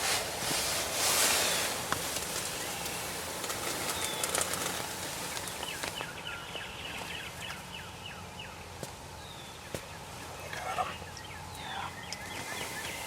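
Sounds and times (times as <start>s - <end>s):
small rustles: 0.0s - 6.1s.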